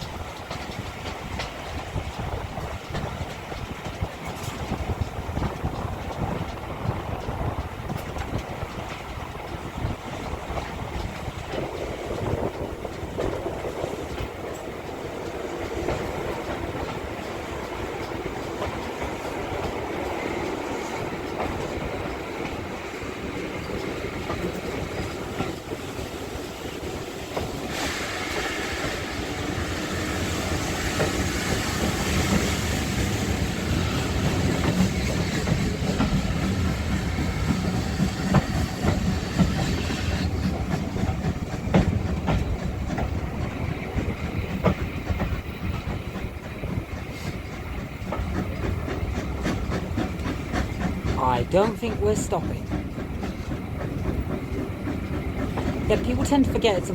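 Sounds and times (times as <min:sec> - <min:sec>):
wheels clicking over rail joints: 0:00.0 - 0:27.8, 0:30.5 - 0:56.9
train coaches rumbling: 0:00.0 - 0:56.9
hissing rush: 0:27.6 - 0:35.5.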